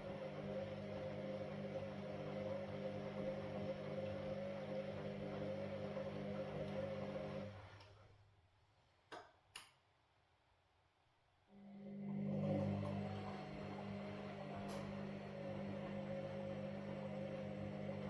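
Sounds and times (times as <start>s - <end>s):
washing machine motor humming: 0.0s - 7.8s, 11.6s - 18.0s.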